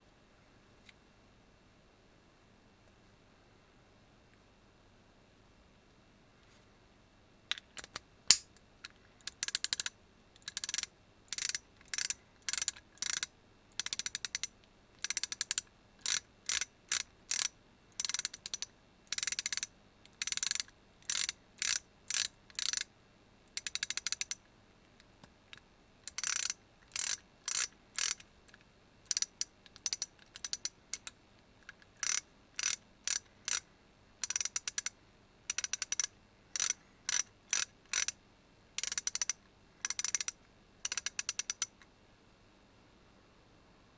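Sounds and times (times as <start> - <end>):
ratchet handle clicking: 9.3 - 22.8, 23.6 - 24.4, 26.0 - 28.2, 29.1 - 31.1, 32.0 - 33.6, 34.2 - 34.9, 35.5 - 38.1, 38.8 - 41.7.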